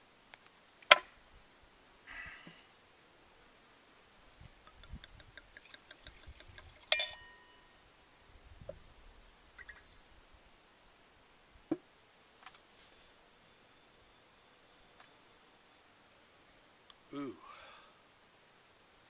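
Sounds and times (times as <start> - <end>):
glass and bottle knocks: 4.9 - 7.3
glassware clinking: 5.6 - 7.7.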